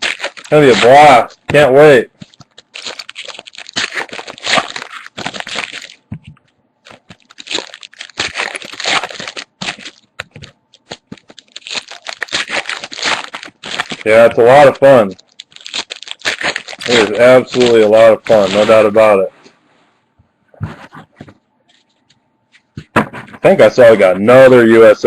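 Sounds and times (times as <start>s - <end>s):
card packs tearing open: 0.0s - 19.2s
foil wrappers crinkling: 0.0s - 19.2s.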